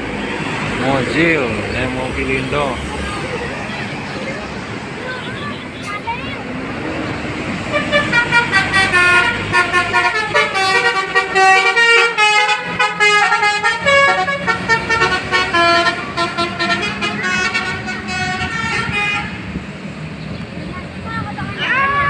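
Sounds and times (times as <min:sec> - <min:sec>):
multi-tone bus horn melody: 0:07.6 - 0:19.6.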